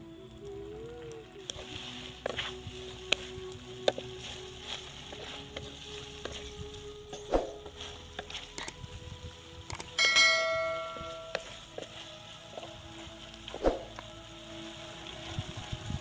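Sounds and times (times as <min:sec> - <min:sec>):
metallic ring: 0:10.0 - 0:11.5.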